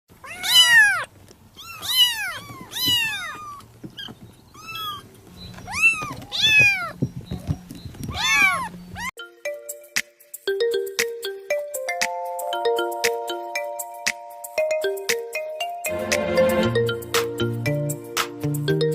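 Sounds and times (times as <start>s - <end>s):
cat meowing: 0.2s - 7.0s, 8.1s - 9.1s
electronic jingle: 15.8s - 17.1s.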